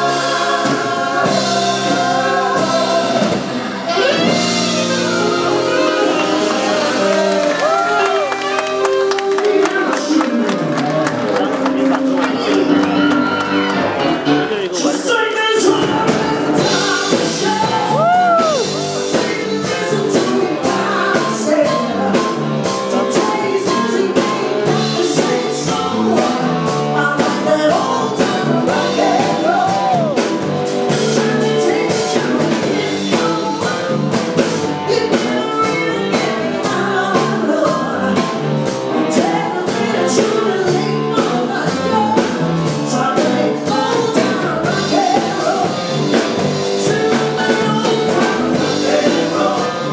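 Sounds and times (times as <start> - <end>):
electric guitar: 0.0 - 14.8
drum kit beat: 0.0 - 49.9
live rock band playing: 0.0 - 49.9
person singing: 0.0 - 49.9.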